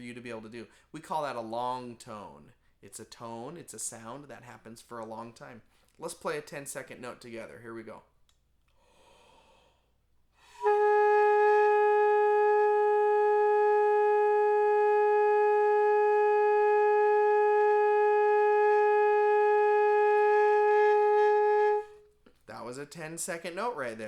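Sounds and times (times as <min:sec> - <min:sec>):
alto saxophone long tone: 0:10.5 - 0:22.1.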